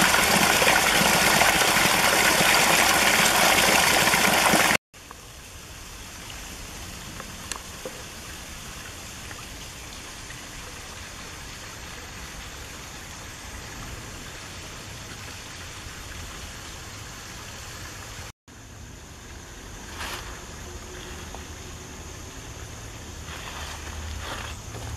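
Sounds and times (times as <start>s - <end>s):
creek water flowing: 0.0s - 18.3s.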